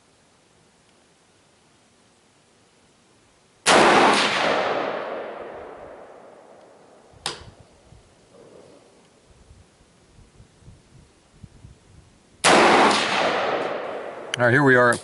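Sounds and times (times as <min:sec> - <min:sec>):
rifle shot echoing: 0:03.6 - 0:07.5, 0:12.4 - 0:14.3
faint sharp crack: 0:06.5 - 0:07.5.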